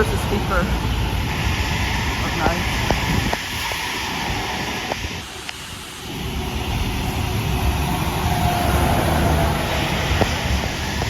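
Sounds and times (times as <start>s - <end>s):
car passing by: 6.1s - 11.0s.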